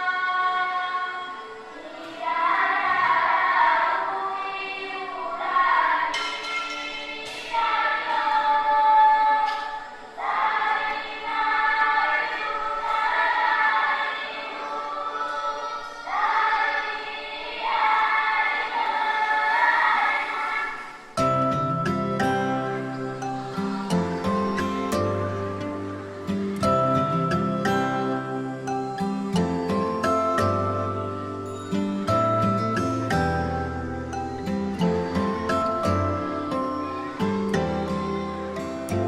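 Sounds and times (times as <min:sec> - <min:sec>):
choir singing wordless phrases: 0:00.0 - 0:39.0
music: 0:00.0 - 0:39.0.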